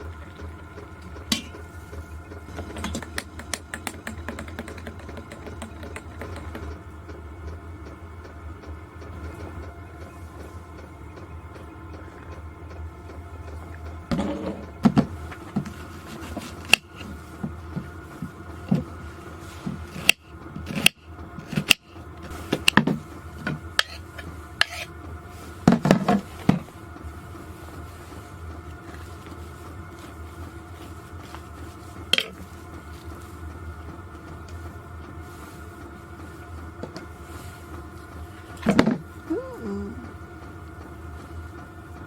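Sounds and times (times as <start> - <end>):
steady low hum: 0.0 - 42.0
hard objects knocking and clattering: 2.6 - 6.8.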